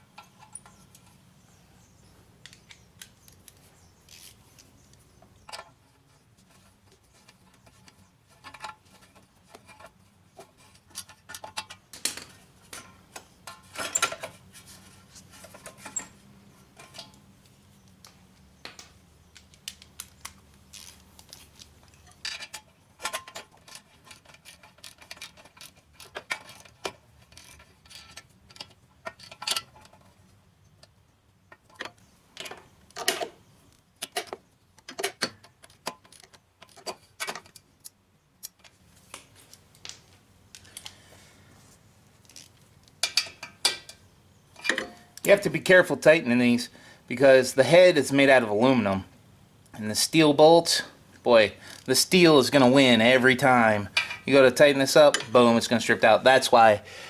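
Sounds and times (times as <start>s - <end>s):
wrench and bolts clinking: 55.0s - 55.5s.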